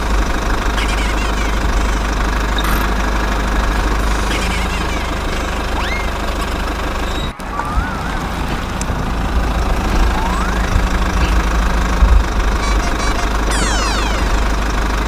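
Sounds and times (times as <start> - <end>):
small engine idling: 0.0 - 15.0
faint rising whistles: 5.6 - 11.8.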